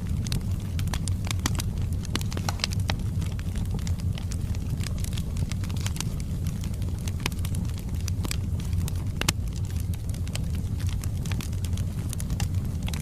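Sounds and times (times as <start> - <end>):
fire rumbling: 0.0 - 13.0
logs crackling and popping: 0.0 - 13.0.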